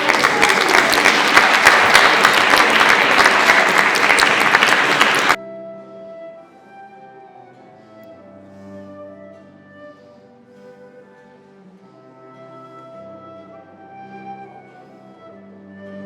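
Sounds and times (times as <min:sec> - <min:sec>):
audience clapping: 0:00.0 - 0:05.4
soft instrumental music: 0:05.4 - 0:16.0.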